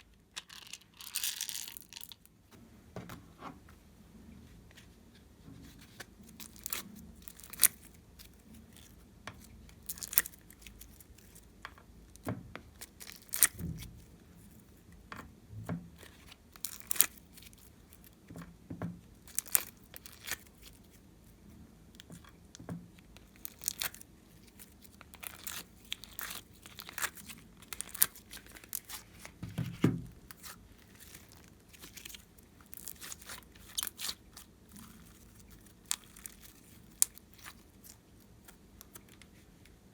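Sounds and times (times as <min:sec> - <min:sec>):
slime popping and crackling: 0:23.2 - 0:39.0.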